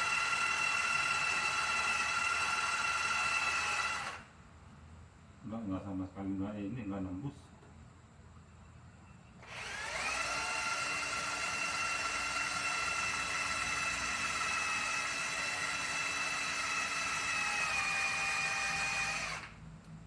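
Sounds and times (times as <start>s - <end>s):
electric drill whining: 0.0s - 4.3s, 9.4s - 19.6s.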